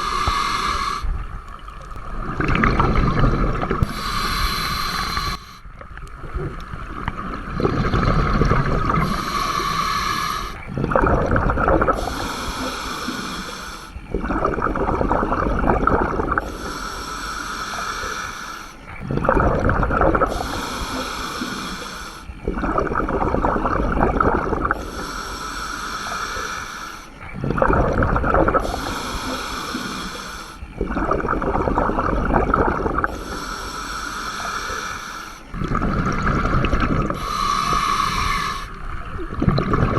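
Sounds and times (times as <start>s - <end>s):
regulator hissing inhales: 0.0s - 1.1s, 3.8s - 5.6s, 9.0s - 10.7s, 12.0s - 14.0s, 16.4s - 18.9s, 20.3s - 22.3s, 24.8s - 27.3s, 28.6s - 30.7s, 33.1s - 35.5s, 37.1s - 38.8s
bubbling exhales underwater: 0.0s - 16.9s, 18.9s - 26.6s, 27.2s - 39.9s.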